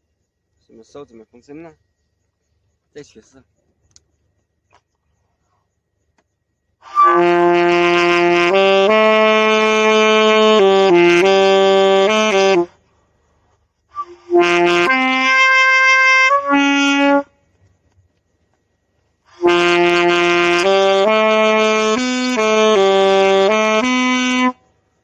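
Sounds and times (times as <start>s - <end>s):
saxophone held notes: 6.8s - 12.7s, 14.0s - 17.3s, 19.3s - 24.6s.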